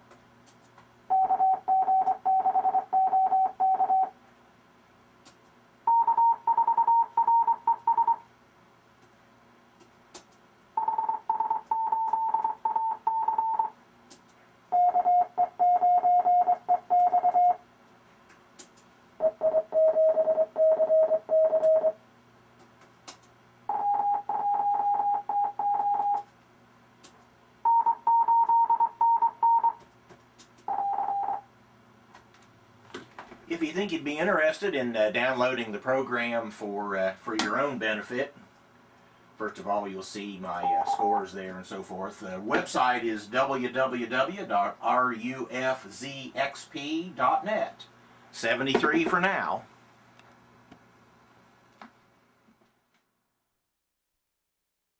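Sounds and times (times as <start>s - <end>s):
morse code beeps: 1.1s - 4.1s, 5.9s - 8.2s, 10.8s - 13.7s, 14.7s - 17.6s, 19.2s - 22.0s, 23.7s - 26.2s, 27.7s - 29.8s, 30.7s - 31.4s, 40.6s - 41.1s.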